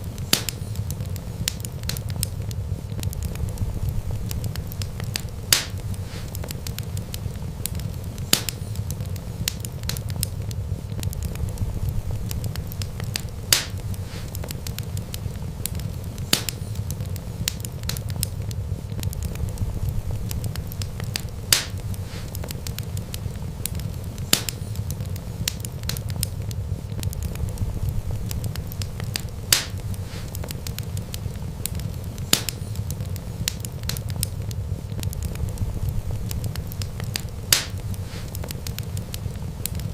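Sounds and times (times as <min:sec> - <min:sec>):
steady low rumble: 0:00.0 - 0:39.9
wood fire crackling: 0:00.0 - 0:39.9
sharp loud fire pops: 0:00.3 - 0:00.8, 0:04.2 - 0:06.4, 0:07.2 - 0:08.8, 0:12.4 - 0:14.4, 0:20.4 - 0:22.4, 0:23.7 - 0:24.8, 0:28.3 - 0:30.5, 0:31.7 - 0:32.8, 0:36.3 - 0:38.5.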